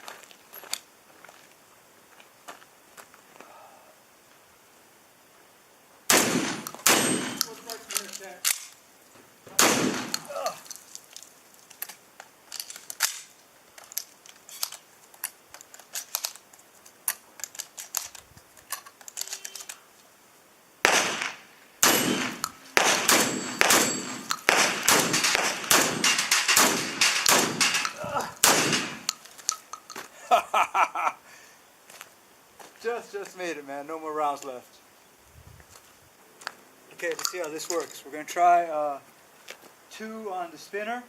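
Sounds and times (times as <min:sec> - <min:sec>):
shotgun shots: 0:06.1 - 0:08.0, 0:09.5 - 0:10.4, 0:20.8 - 0:29.1.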